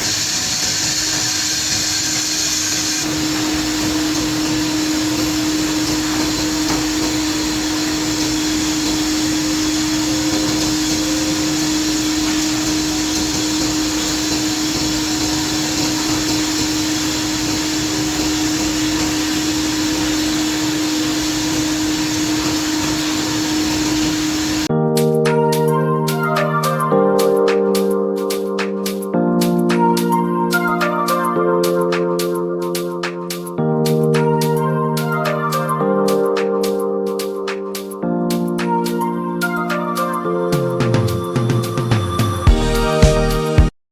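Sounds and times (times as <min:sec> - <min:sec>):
high hiss: 0:00.0 - 0:24.7
milling machine running: 0:00.0 - 0:24.7.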